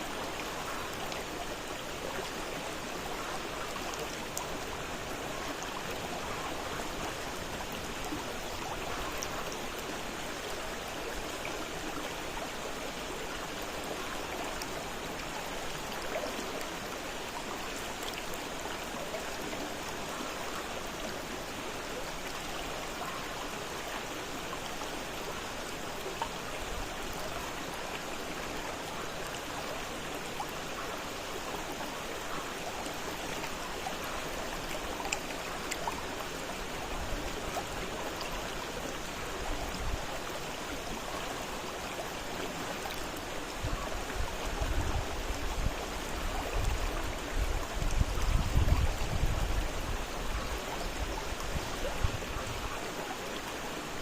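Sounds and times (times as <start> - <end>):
river water rushing over rocks: 0.0 - 54.0.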